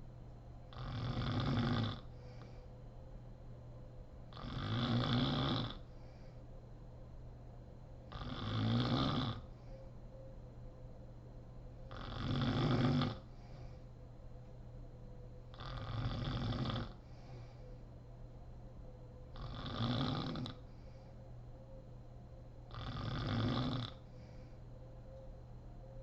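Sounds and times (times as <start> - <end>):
woman snoring: 0.7 - 2.4, 4.3 - 6.0, 8.1 - 9.5, 11.9 - 13.6, 15.5 - 17.1, 19.3 - 20.7, 22.7 - 24.1.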